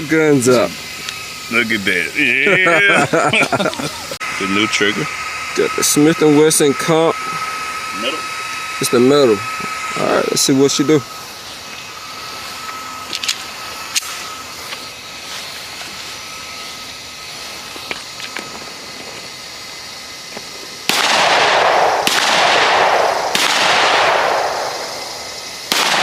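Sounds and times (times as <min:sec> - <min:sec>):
pistol shots echoing: 0:20.9 - 0:24.8, 0:25.7 - 0:26.0.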